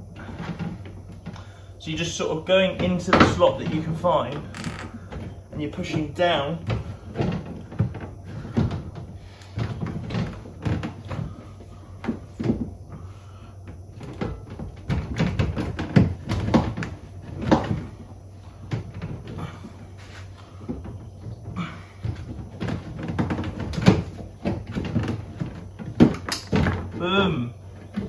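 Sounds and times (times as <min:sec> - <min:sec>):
plastic knocks clicks and creaks: 0:02.6 - 0:11.3, 0:22.0 - 0:28.0.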